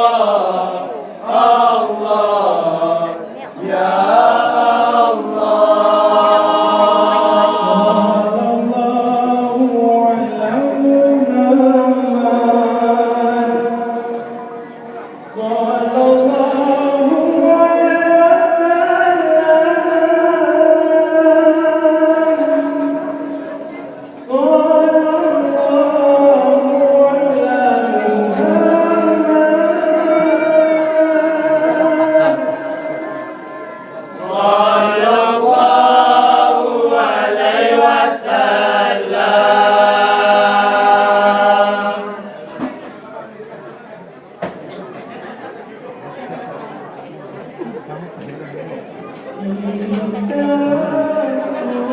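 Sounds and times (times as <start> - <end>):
person singing chant-like phrases: 0.0 - 14.6, 15.2 - 42.6, 49.3 - 51.9
music with sliding sung notes: 21.4 - 42.2.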